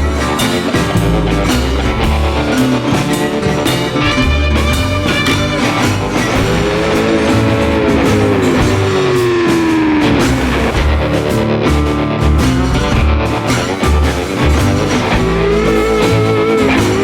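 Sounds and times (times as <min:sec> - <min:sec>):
rock music with electric guitar: 0:00.0 - 0:17.0.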